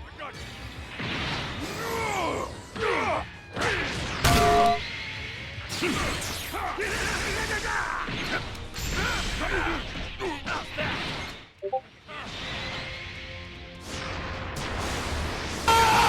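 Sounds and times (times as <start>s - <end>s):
loud short held tone: 4.3s - 4.8s.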